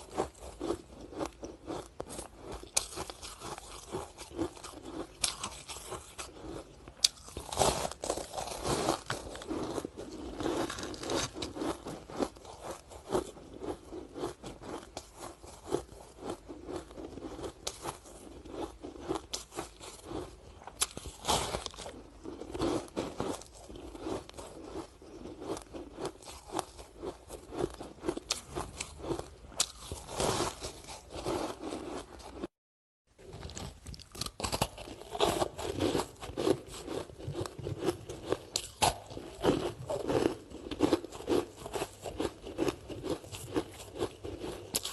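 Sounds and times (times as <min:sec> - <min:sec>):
ice being crunched: 0:10.3 - 0:11.7.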